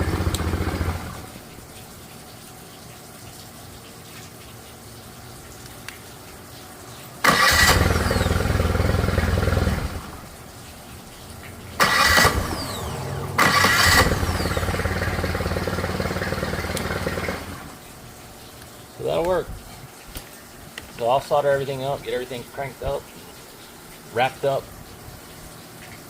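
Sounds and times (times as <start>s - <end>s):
outboard motor running: 0.0s - 1.5s, 7.5s - 10.3s, 11.6s - 17.8s.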